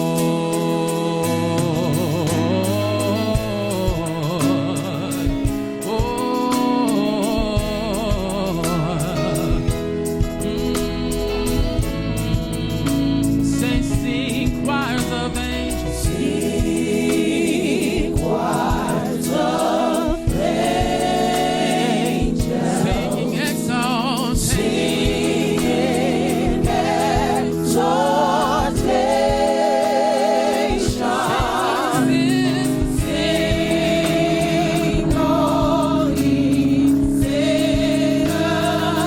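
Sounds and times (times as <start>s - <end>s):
gospel choir singing: 0.0s - 39.0s
instrumental accompaniment: 0.0s - 39.0s.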